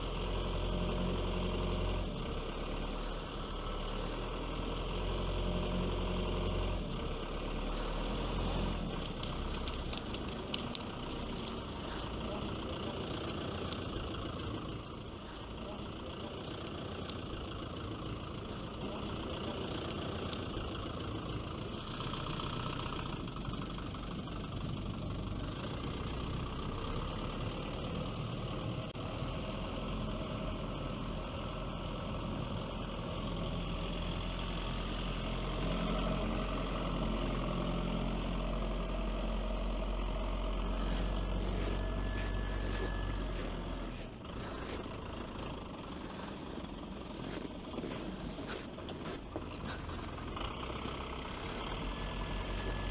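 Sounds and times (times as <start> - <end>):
diesel engine running under load: 0.0 - 52.9
deep low hum: 38.0 - 52.9.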